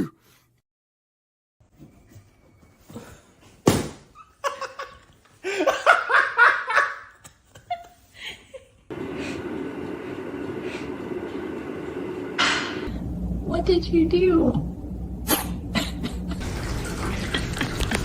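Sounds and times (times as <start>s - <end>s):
person laughing heartily: 4.4s - 8.9s, 15.7s - 18.0s.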